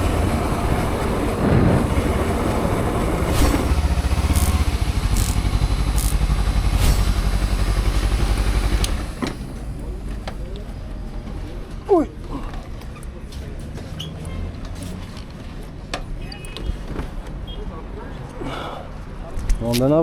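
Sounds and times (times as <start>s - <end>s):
motorcycle engine pulsing: 0.0s - 9.2s.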